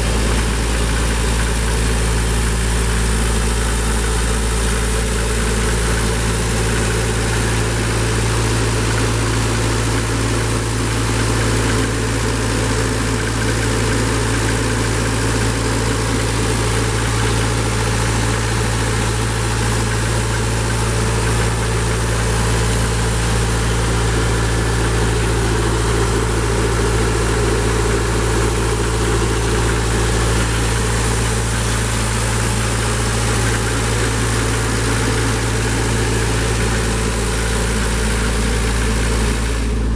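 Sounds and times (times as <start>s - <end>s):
diesel air compressor engine running: 0.0s - 39.9s.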